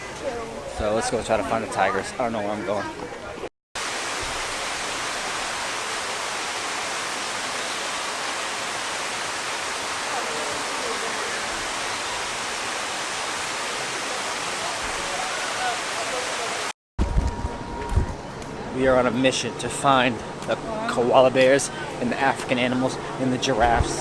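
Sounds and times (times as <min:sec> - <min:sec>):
falling water rushing: 0:03.8 - 0:16.8.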